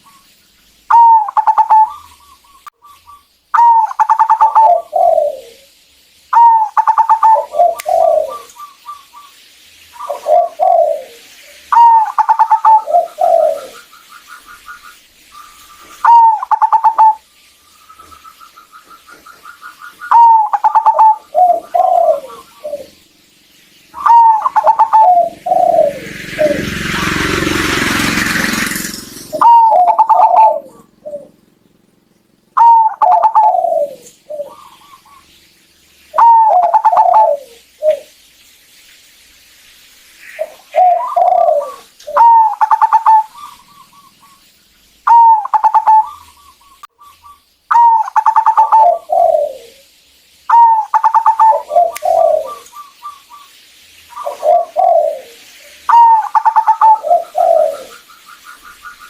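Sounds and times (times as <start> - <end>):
dove cooing: 0.9 - 5.7, 6.3 - 9.4, 10.0 - 17.2, 18.0 - 23.1, 24.0 - 31.6, 32.5 - 35.4, 36.1 - 38.2, 40.3 - 49.9, 50.5 - 59.0
loud rushing noise: 25.2 - 29.6.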